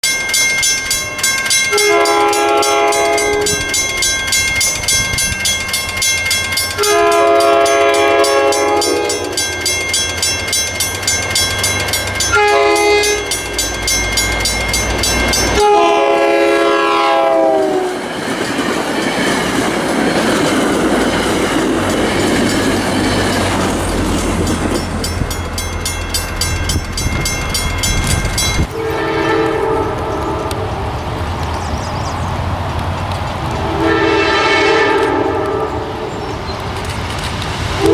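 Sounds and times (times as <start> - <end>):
train rumble and wheel noise: 0.0 - 37.9
train horn: 1.7 - 3.8, 6.8 - 9.6, 12.3 - 13.5, 15.5 - 18.1, 28.6 - 31.0, 33.6 - 36.4.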